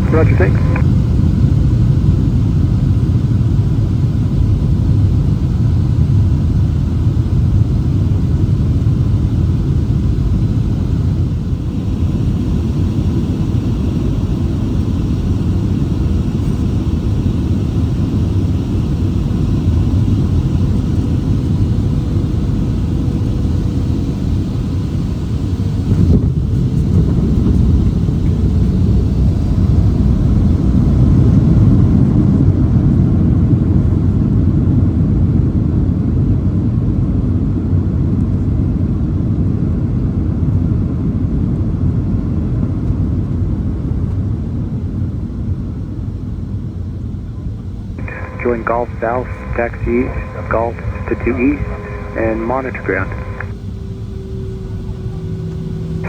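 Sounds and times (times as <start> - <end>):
airliner cabin engine rumble: 0.0 - 33.9, 47.3 - 56.0.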